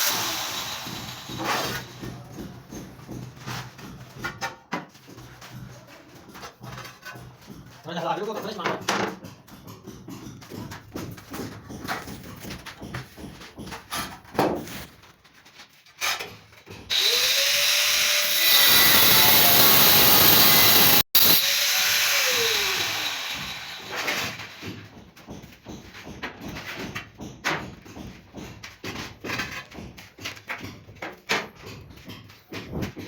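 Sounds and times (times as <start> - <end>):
handheld power tool running: 0.0 - 2.0, 16.9 - 24.9.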